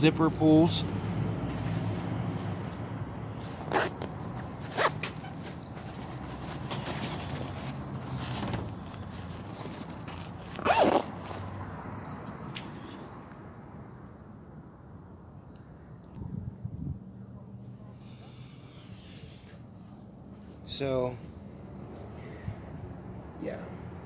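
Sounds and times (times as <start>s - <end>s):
zipper rasping: 3.6s - 4.1s, 4.7s - 5.3s, 10.4s - 11.4s.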